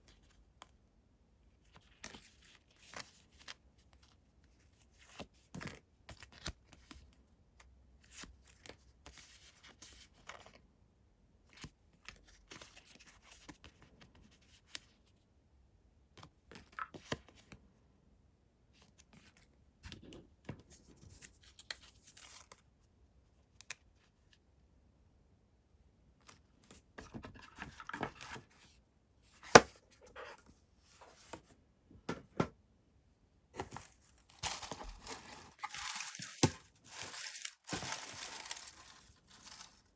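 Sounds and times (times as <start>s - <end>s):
packaging tearing and rustling: 33.7s - 39.9s.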